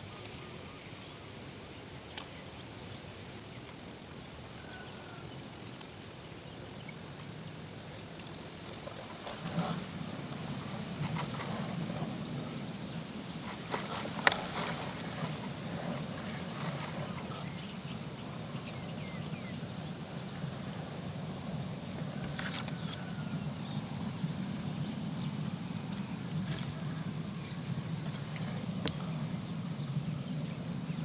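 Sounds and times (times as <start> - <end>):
steady low hum: 7.8 - 31.0
small bird chirping: 22.1 - 29.2.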